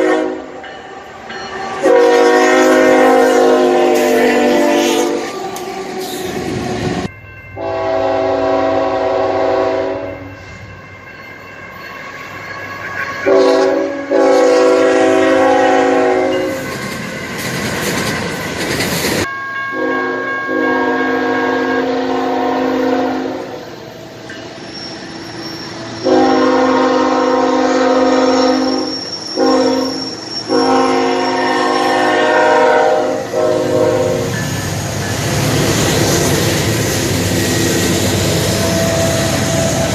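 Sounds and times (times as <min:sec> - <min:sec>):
locomotive air horn chord: 0:00.0 - 0:00.6, 0:01.8 - 0:05.5, 0:07.6 - 0:10.3, 0:13.2 - 0:16.6, 0:19.7 - 0:23.6, 0:26.0 - 0:34.4
passing train running noise: 0:00.0 - 0:39.9.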